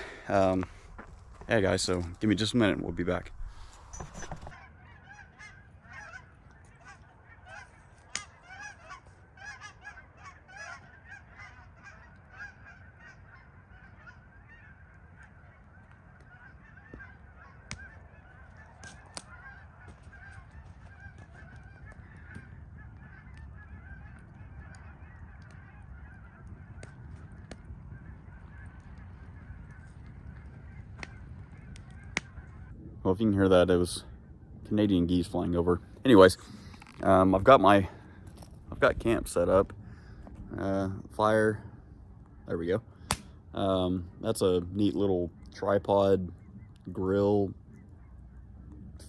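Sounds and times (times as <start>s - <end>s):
geese honking: 0.0s - 32.8s, 45.0s - 48.7s.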